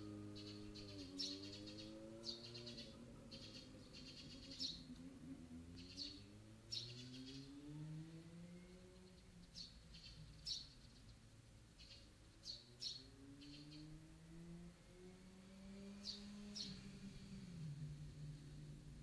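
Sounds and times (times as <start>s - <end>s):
faint low hum: 0.0s - 19.0s
small birds chirping: 0.0s - 19.0s.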